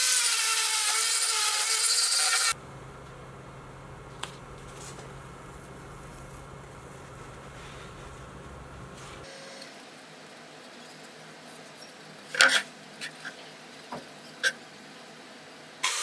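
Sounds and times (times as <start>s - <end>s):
power tool grinding: 0.0s - 9.3s
low steady hum: 2.6s - 9.3s.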